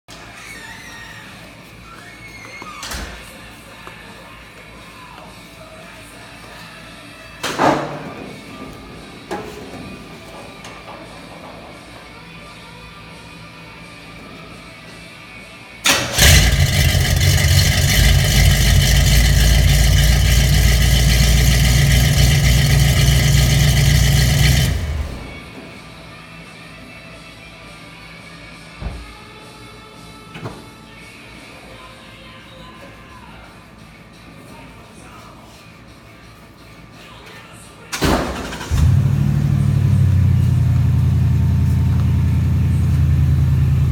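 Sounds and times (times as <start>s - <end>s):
pickup truck engine running: 15.9s - 25.4s, 38.6s - 43.9s.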